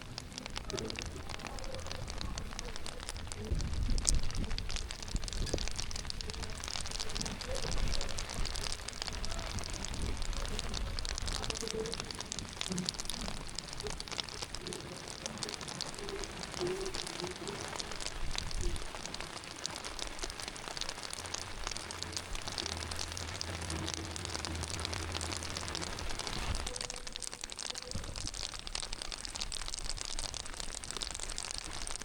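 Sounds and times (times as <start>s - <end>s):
heavy rain: 0.0s - 32.0s
low rumble: 21.0s - 27.3s.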